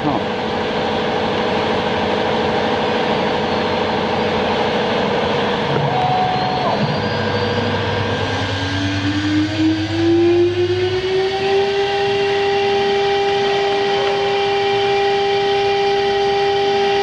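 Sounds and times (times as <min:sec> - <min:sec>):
router mechanical whine: 0:00.0 - 0:17.0
tone rising in pitch: 0:05.6 - 0:12.4.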